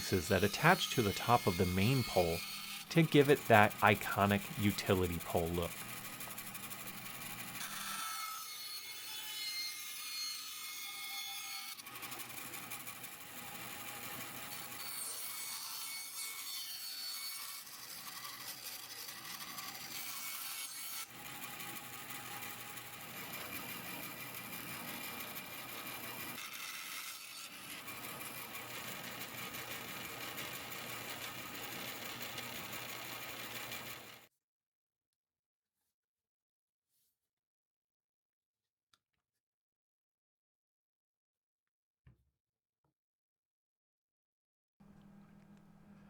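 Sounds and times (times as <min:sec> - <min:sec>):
sawing wood: 0:00.0 - 0:34.3
rasping wood: 0:00.2 - 0:07.6.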